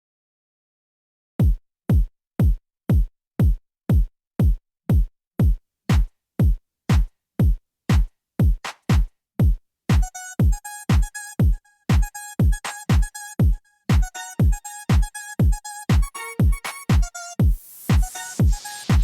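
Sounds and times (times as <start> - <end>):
drum machine kick drum thumping: 1.4 - 19.0
ticking hi-hats: 14.4 - 19.0.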